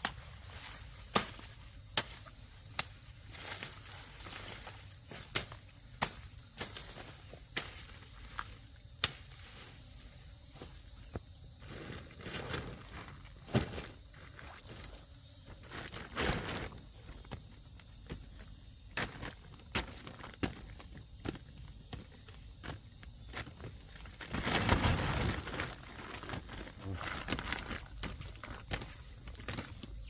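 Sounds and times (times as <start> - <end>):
rustling: 23.6 - 29.7.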